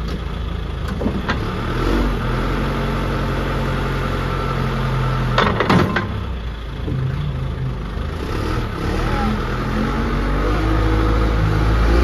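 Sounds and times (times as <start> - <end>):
diesel engine idling: 0.0 - 12.0
sharp metallic clanks: 5.3 - 8.7.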